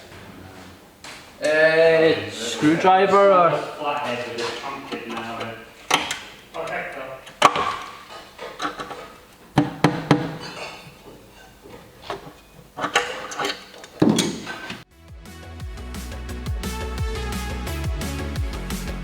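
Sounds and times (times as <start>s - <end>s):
hand tools knocking and clattering: 3.5s - 14.8s
background music: 14.6s - 19.0s.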